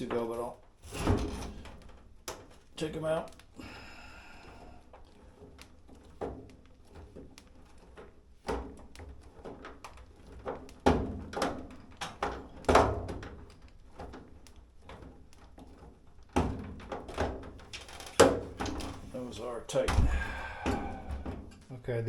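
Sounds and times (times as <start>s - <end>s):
sharp thunks: 19.8s - 21.5s.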